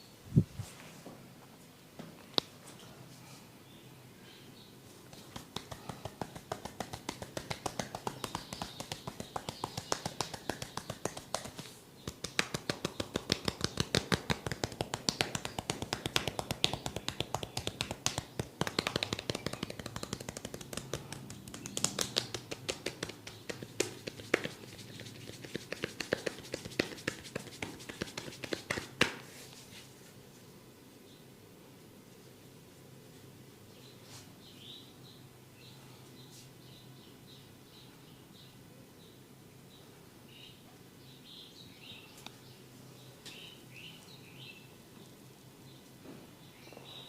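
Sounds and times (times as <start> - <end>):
rapid tapping on head: 5.1 - 29.3.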